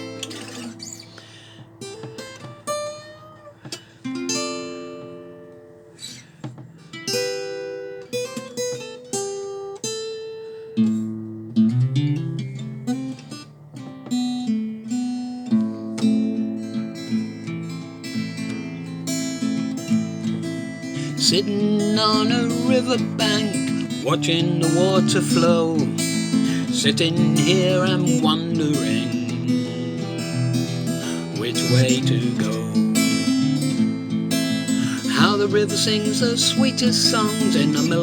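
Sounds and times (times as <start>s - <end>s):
acoustic guitar picking chords: 0.0s - 38.0s.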